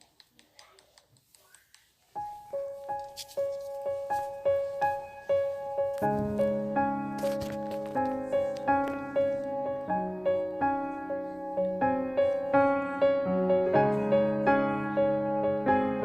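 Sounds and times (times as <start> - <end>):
gentle keyboard tune: 2.2 - 16.0.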